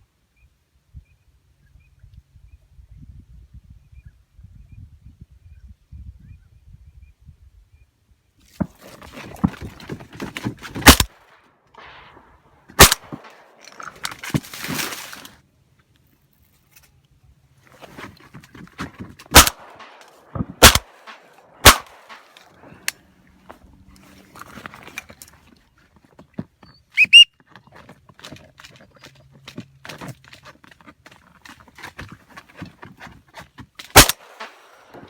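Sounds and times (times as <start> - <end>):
shotgun blasts: 10.8 - 14.1, 19.3 - 22.9, 33.9 - 35.0
rustling: 11.8 - 15.4, 16.0 - 26.4.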